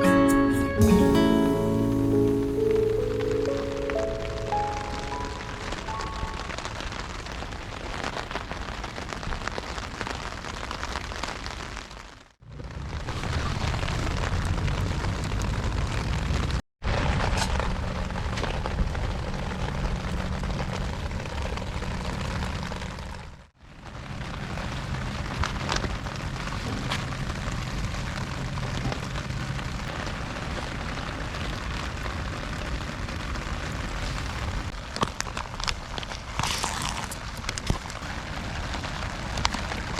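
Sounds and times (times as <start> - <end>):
wood fire crackling: 0.8 - 39.9
wind on microphone rumble: 12.6 - 36.4.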